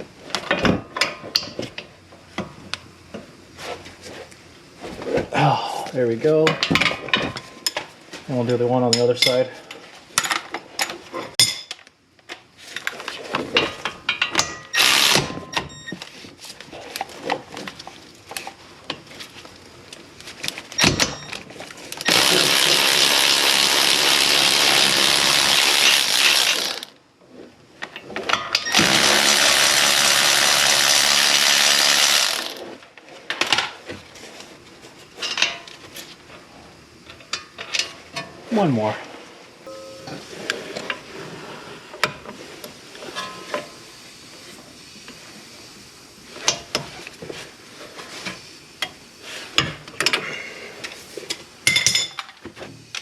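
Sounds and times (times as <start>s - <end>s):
power tool running: 14.8s - 15.4s, 22.1s - 27.0s, 28.7s - 32.8s
ratchet clicking: 22.0s - 26.9s.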